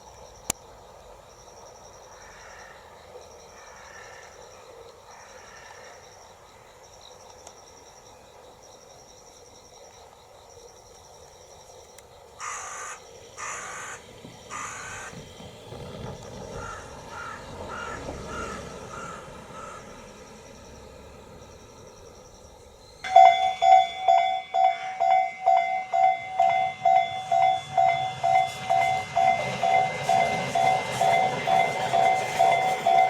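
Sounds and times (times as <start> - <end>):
crow cawing: 2.2 - 2.8, 3.6 - 4.3, 5.2 - 5.9, 12.4 - 15.1, 16.5 - 20.0
level crossing bell dinging: 23.1 - 33.0.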